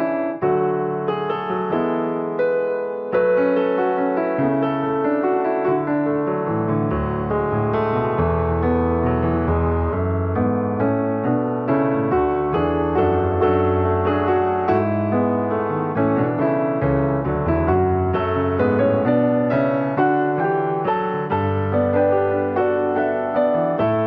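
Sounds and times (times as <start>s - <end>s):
piano-like keyboard music: 0.0s - 24.0s.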